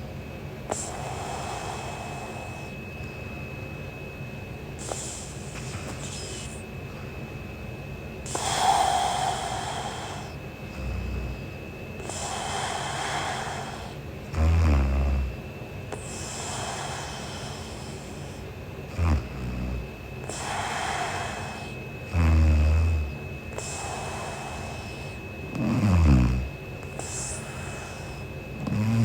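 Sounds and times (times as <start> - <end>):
breathy exhales: 0.6 - 3.0, 4.8 - 7.2, 8.2 - 29.0
woman snoring: 8.3 - 29.0.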